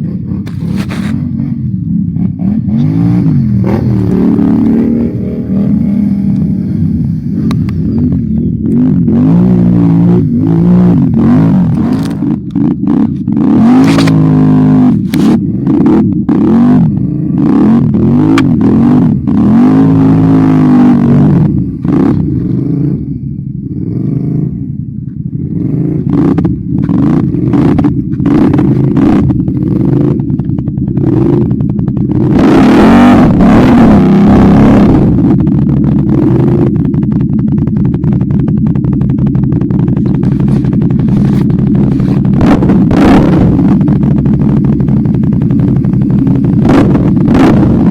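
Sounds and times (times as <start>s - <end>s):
atv engine revving: 0.0s - 47.9s
knocks and clatter: 35.4s - 47.9s.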